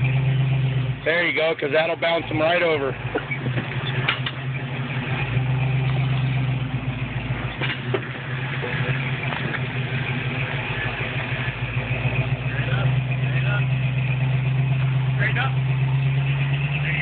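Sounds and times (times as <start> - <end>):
engine running at low revs: 0.0 - 17.0.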